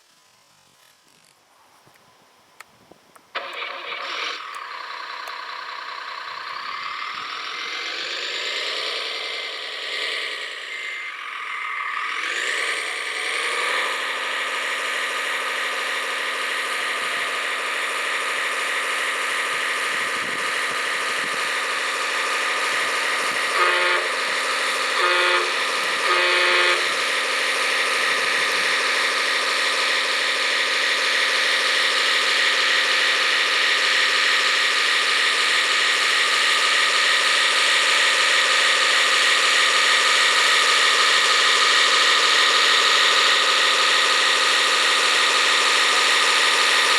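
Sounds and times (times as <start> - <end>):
toy truck engine sound: 0.0 - 46.9
horn blasts: 23.5 - 27.1.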